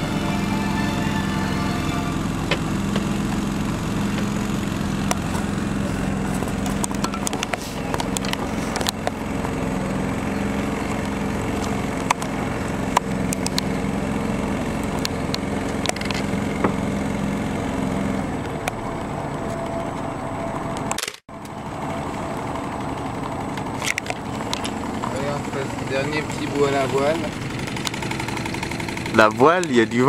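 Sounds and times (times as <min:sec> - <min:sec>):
small boat engine running: 0:00.0 - 0:30.0
sharp clicks and knocks: 0:06.2 - 0:09.6.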